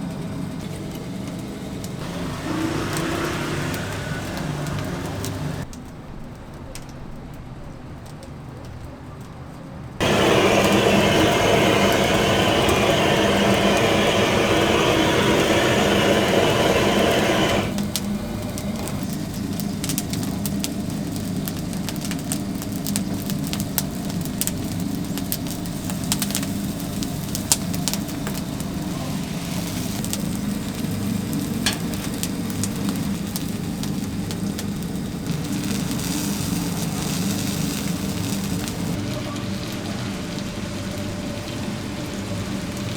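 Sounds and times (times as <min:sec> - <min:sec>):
fire roaring: 0:00.0 - 0:05.8, 0:10.0 - 0:42.9
fire crackling: 0:00.0 - 0:06.0, 0:10.0 - 0:42.9.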